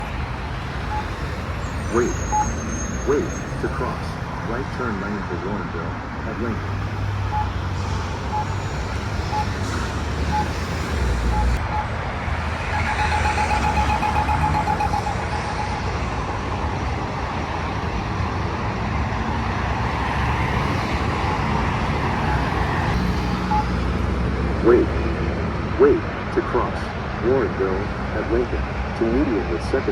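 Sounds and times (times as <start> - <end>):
pedestrian signal ticking: 0.0 - 2.8, 7.2 - 17.4, 23.4 - 23.8
road traffic: 0.0 - 29.9.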